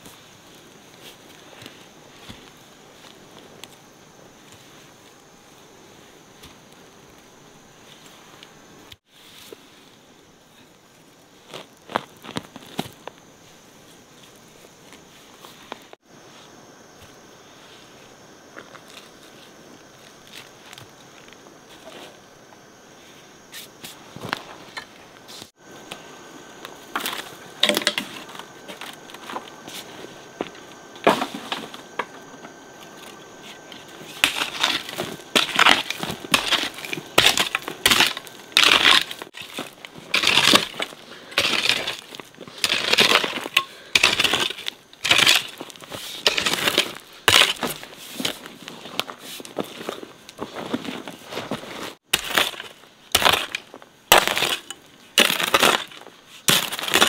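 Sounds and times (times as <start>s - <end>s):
crunching of dry material: 33.5s - 57.0s.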